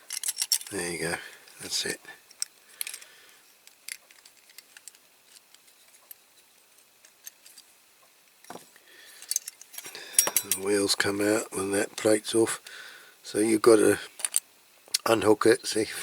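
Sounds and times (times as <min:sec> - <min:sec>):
metal toy parts clicking: 0:00.0 - 0:00.7, 0:02.3 - 0:06.2, 0:09.2 - 0:10.7, 0:14.2 - 0:14.4.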